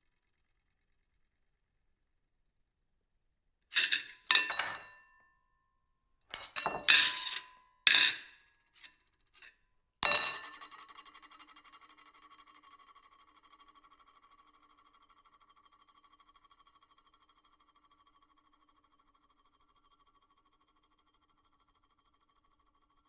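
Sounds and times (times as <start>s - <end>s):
ceramic plate clattering: 3.8s - 5.0s, 6.3s - 8.3s, 10.0s - 10.8s
plate rattling ring: 3.8s - 5.0s, 6.3s - 8.2s, 10.0s - 10.8s.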